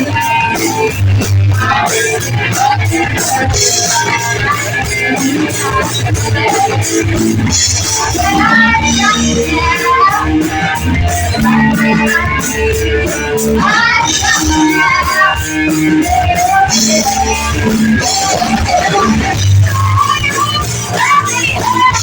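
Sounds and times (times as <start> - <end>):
bass guitar: 0.0 - 22.0
drums with cymbals: 0.0 - 22.0
electric guitar: 0.0 - 22.0
melody line: 8.4 - 14.8.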